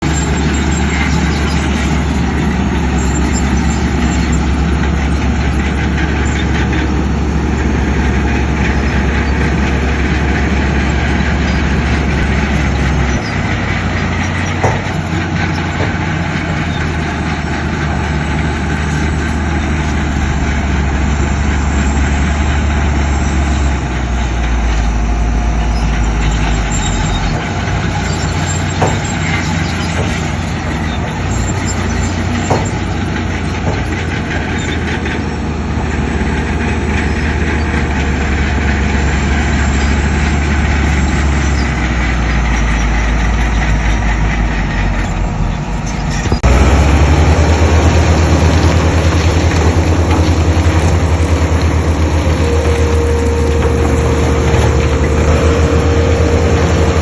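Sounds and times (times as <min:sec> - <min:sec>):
diesel machinery engine running: 0:00.0 - 0:57.0
sharp metallic clanks: 0:26.9 - 0:35.3.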